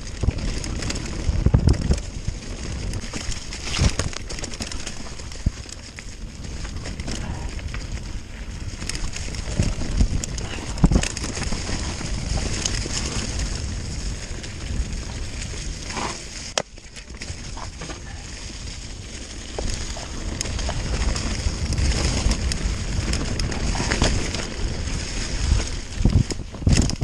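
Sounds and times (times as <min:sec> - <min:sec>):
bike knocks and rattles: 0:00.0 - 0:27.0
bike tyres crunching on trail: 0:00.0 - 0:27.0.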